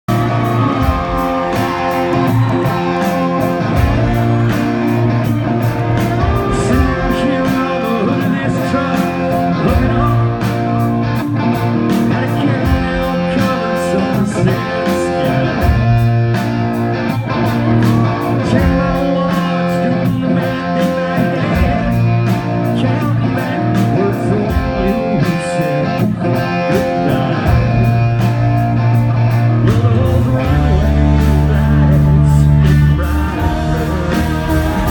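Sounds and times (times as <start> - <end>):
live country band playing: 0.1 - 34.9.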